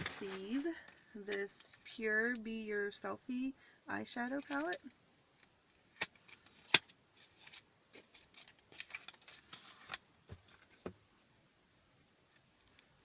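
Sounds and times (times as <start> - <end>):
packaging rustling and scraping: 0.0 - 1.9, 5.9 - 10.8.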